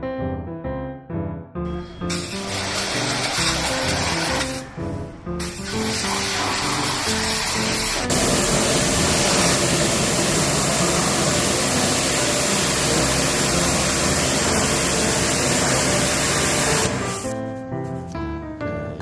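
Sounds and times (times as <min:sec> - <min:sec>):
pressure washer spraying water: 0:02.0 - 0:04.8, 0:05.4 - 0:17.4.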